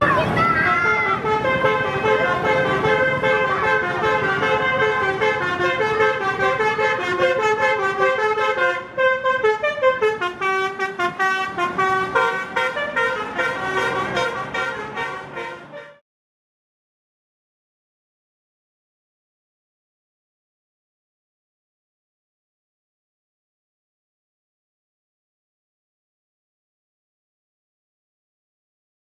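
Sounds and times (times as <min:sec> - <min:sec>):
musical bus horn melody: 0:00.4 - 0:16.0.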